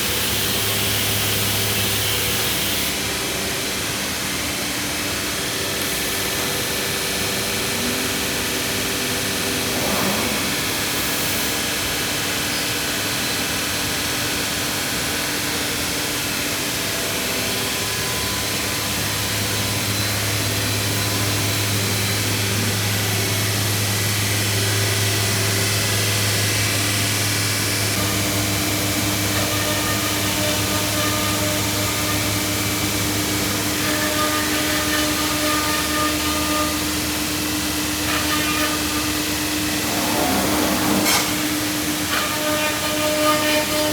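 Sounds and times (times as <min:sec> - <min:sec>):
router machine running: 0:00.0 - 0:13.4, 0:14.5 - 0:43.9.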